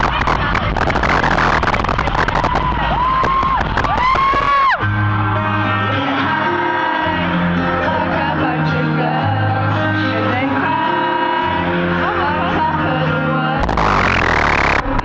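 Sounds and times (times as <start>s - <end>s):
harsh burst of noise: 0.0s - 4.7s, 13.6s - 15.0s
amplified live pop music: 0.0s - 15.0s
person singing: 5.4s - 15.0s.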